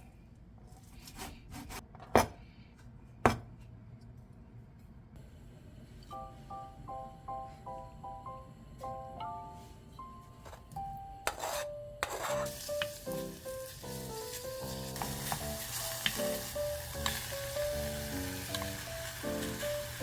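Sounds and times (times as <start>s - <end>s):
light music with plucked notes: 6.1s - 20.0s
food sizzling in a pan: 12.1s - 20.0s.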